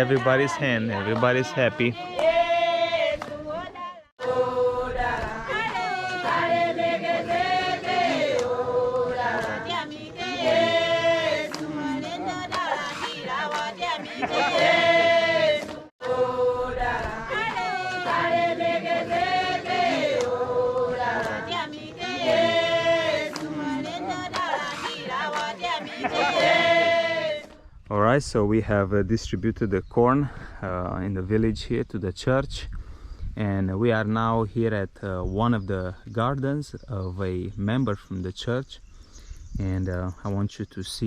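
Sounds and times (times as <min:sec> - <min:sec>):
group of voices singing: 0:00.0 - 0:27.6.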